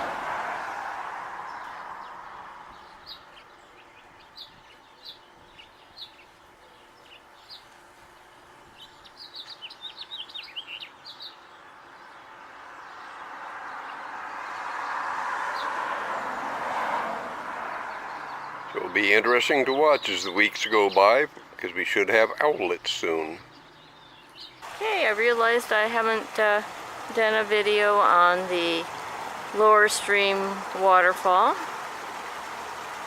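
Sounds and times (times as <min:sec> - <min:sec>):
songbird chirping: 0:00.0 - 0:33.0
steady rushing hiss: 0:24.6 - 0:33.0.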